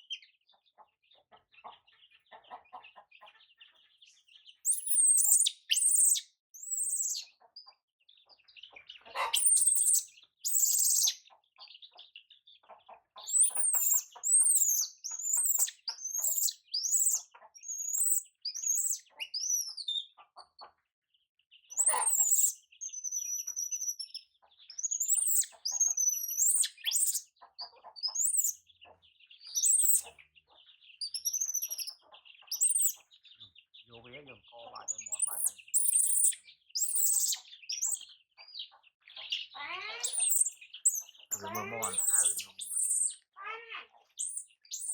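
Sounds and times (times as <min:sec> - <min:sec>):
chicks peeping: 0:00.0 - 0:20.8, 0:21.5 - 0:44.9
baby monkey screaming: 0:04.7 - 0:07.2, 0:09.2 - 0:11.1, 0:13.3 - 0:19.8, 0:21.8 - 0:22.5, 0:28.1 - 0:28.5, 0:29.6 - 0:30.1, 0:31.1 - 0:33.0, 0:34.8 - 0:38.0, 0:39.5 - 0:44.9.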